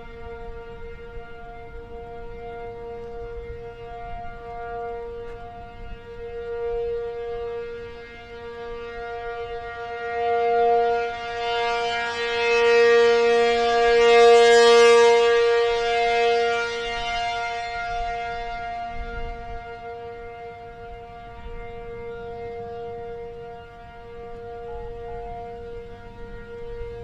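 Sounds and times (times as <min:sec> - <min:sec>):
outdoor warning siren steady tone: 0:00.0 - 0:27.0.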